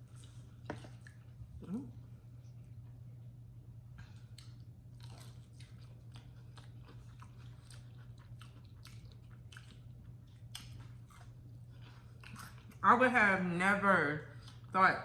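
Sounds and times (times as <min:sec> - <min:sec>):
steady low hum: 0:00.0 - 0:15.0
crunchy chewing: 0:04.0 - 0:12.8.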